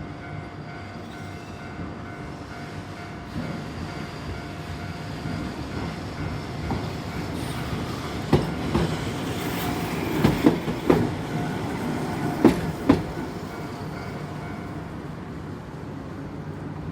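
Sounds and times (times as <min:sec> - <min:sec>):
train passing: 0:00.0 - 0:16.9
wheels clacking over rail joints: 0:05.3 - 0:14.8.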